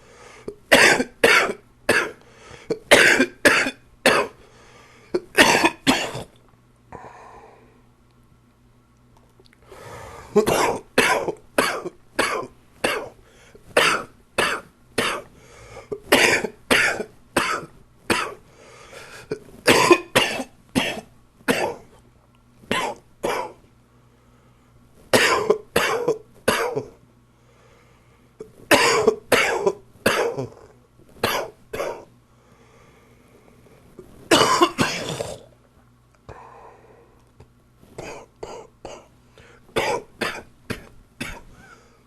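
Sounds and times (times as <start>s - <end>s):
man coughing: 0.7s - 4.4s, 5.2s - 6.3s, 10.3s - 13.2s, 13.8s - 15.3s, 16.0s - 18.4s, 19.2s - 21.8s, 22.7s - 23.6s, 25.2s - 27.0s, 28.7s - 32.1s, 34.3s - 35.4s, 38.0s - 39.1s, 39.8s - 41.8s.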